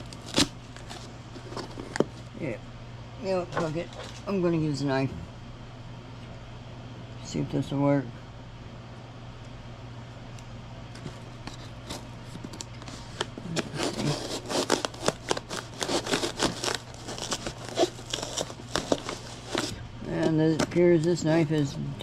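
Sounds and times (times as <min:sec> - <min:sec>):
packaging crinkling and tearing: 0:00.0 - 0:02.2, 0:11.4 - 0:21.1
knife scraping cardboard and plastic: 0:11.4 - 0:20.3.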